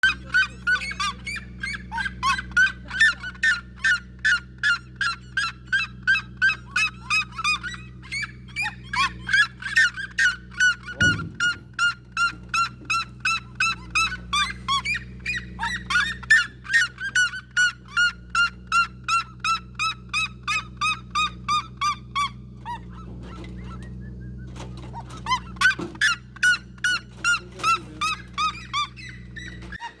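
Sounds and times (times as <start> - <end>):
steady low hum: 0.0 - 29.8
bird honking calls: 0.0 - 30.0
thump: 11.0 - 11.9.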